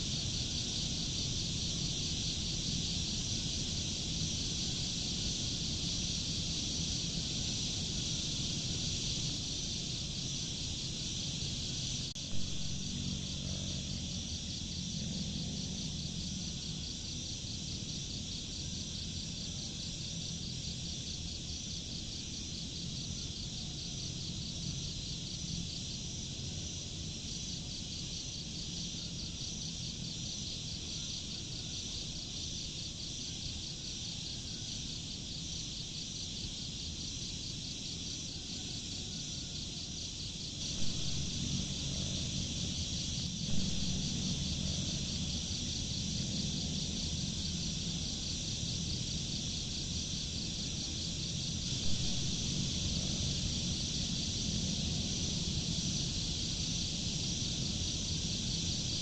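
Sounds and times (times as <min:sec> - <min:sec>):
low outdoor rumble: 0:00.0 - 0:18.3, 0:40.5 - 0:59.0
crickets chirping: 0:00.0 - 0:59.0.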